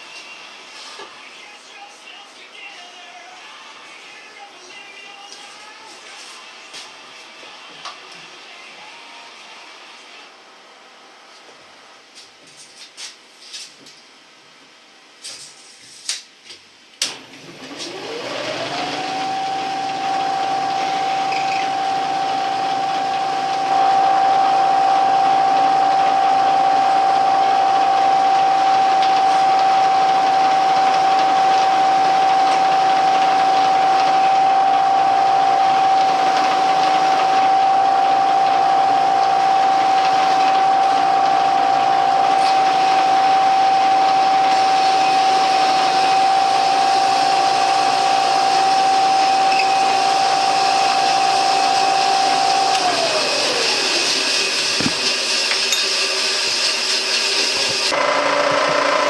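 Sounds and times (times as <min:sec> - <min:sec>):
milling spindle whine: 0:17.1 - 0:59.0.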